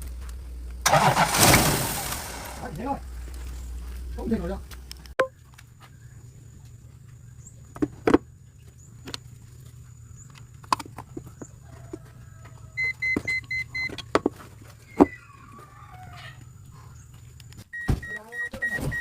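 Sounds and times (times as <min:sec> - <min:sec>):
steady low hum: 0:00.0 - 0:14.6
short electronic beeps: 0:12.8 - 0:14.0, 0:17.8 - 0:19.0.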